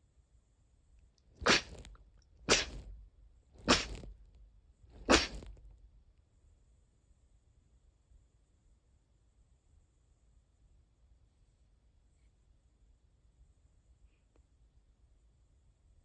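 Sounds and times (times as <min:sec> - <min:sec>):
person sneezing: 0:01.4 - 0:01.9, 0:02.5 - 0:02.8, 0:03.6 - 0:04.1, 0:05.0 - 0:05.5.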